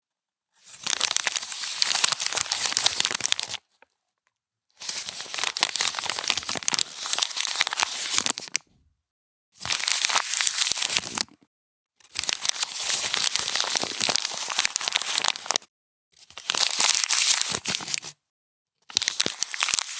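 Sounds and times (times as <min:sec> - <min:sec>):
paper being crumpled: 0:00.7 - 0:03.6, 0:04.8 - 0:08.6, 0:09.7 - 0:11.3, 0:12.1 - 0:15.6, 0:16.3 - 0:18.1, 0:18.9 - 0:19.9.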